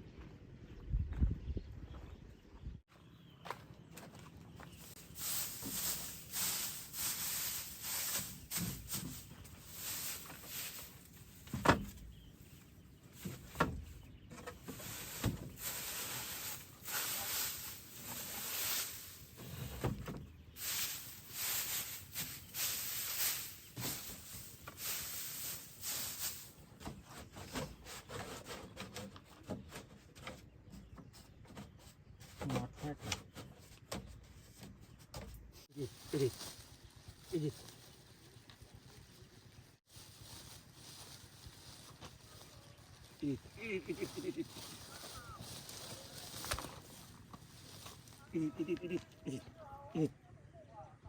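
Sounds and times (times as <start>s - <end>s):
footsteps rustling through dry leaves: 4.6s - 26.7s, 35.7s - 48.8s.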